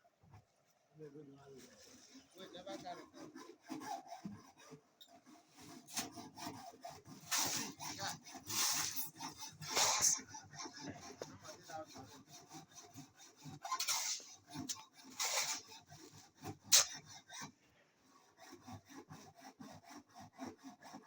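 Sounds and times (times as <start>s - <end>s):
rough scraping and rubbing: 7.0s - 12.2s, 13.6s - 17.1s.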